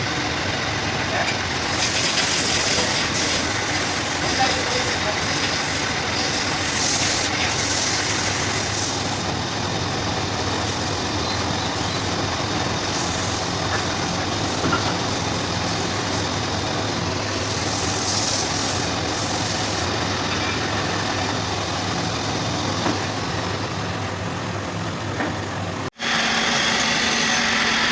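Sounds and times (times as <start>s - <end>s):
machine humming and hissing: 0.0s - 27.9s
motor humming tone: 26.0s - 27.9s.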